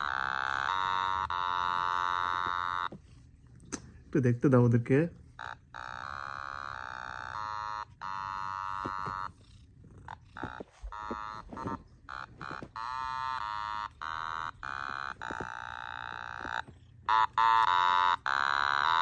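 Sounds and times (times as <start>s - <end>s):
low electronic tone notes: 5.4s - 9.4s, 10.3s - 19.0s.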